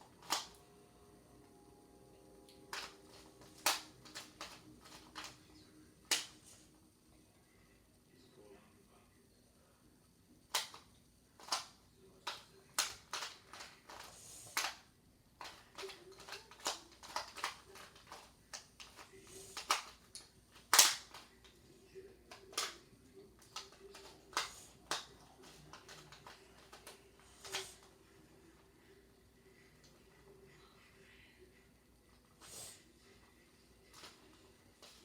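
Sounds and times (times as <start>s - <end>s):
puzzle cube plastic clicks: 0.1s - 0.6s, 2.7s - 6.5s, 10.5s - 14.8s, 15.4s - 21.5s, 22.3s - 27.9s.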